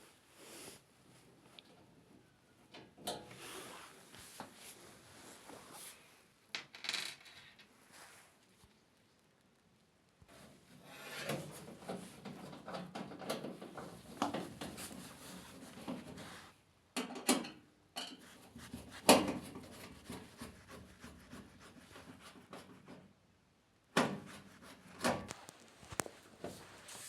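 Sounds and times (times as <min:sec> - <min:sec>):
rubbing and scraping: 0:13.8 - 0:16.5, 0:18.2 - 0:23.0.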